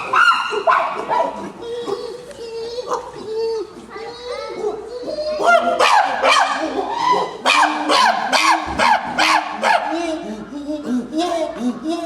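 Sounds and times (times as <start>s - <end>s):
chimpanzees high calls: 0.0s - 3.3s, 4.5s - 10.1s
chimpanzee low hoots: 5.1s - 10.2s.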